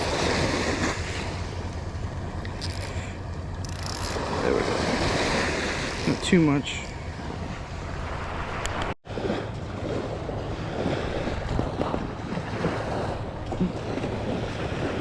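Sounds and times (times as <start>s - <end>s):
surf washing on a beach: 0.0s - 1.7s, 3.9s - 15.0s
wind buffeting microphone: 3.3s - 15.0s.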